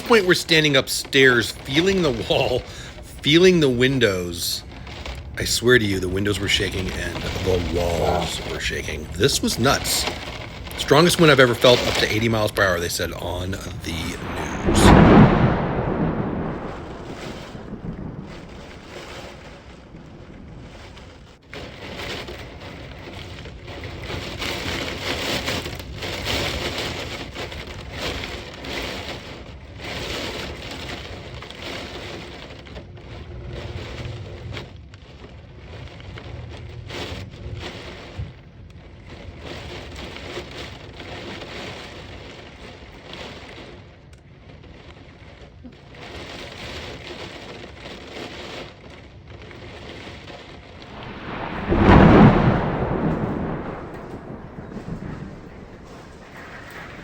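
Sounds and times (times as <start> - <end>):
gusting wind: 0.0 - 29.0, 50.6 - 57.0
heavy rain: 0.0 - 43.8, 44.7 - 57.0.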